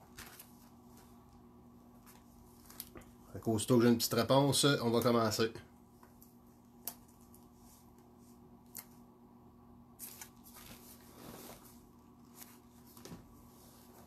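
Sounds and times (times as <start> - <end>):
small objects rustling on a table: 0.0 - 3.2
steady low hum: 0.0 - 14.0.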